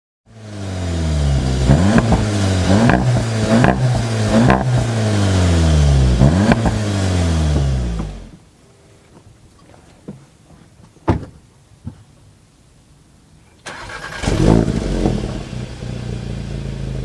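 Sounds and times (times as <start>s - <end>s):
car engine accelerating hard: 0.3s - 8.3s, 13.8s - 17.0s.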